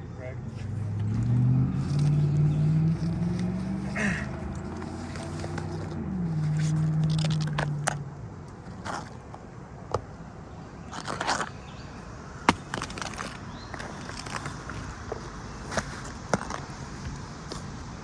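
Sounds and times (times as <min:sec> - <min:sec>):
vehicle engine humming: 0:00.0 - 0:18.0.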